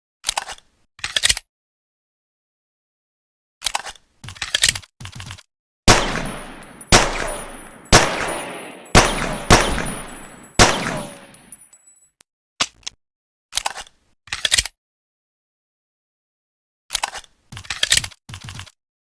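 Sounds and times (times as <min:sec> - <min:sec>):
pistol shots echoing: 0:05.9 - 0:11.6.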